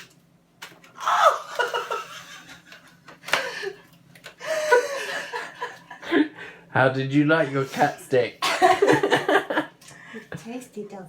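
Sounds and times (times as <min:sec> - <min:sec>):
person laughing: 0:01.0 - 0:03.8, 0:04.4 - 0:06.4, 0:08.4 - 0:09.7.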